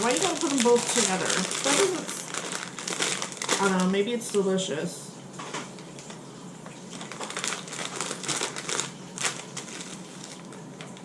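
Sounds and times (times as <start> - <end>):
snack packet crinkling: 0.0 - 4.4, 6.8 - 11.0.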